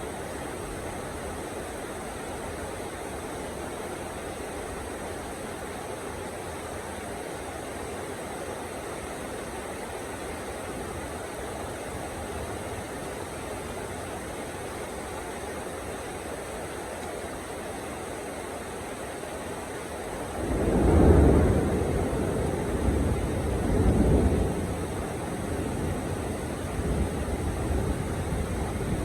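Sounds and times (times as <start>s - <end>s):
heavy rain falling: 0.1s - 29.0s
thunder rumbling: 20.3s - 29.0s.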